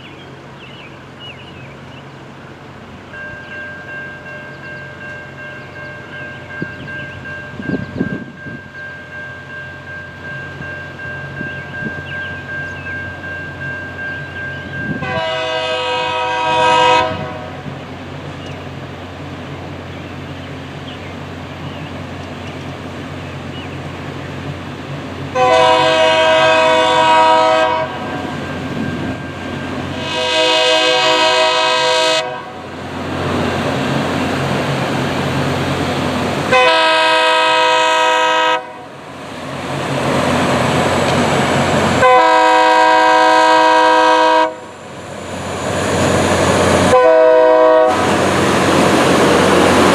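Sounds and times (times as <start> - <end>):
train rumble: 0.0 - 49.9
locomotive horn blasts: 14.8 - 17.7, 25.4 - 28.3, 29.9 - 32.6, 36.5 - 38.9, 42.0 - 44.7, 46.9 - 48.2.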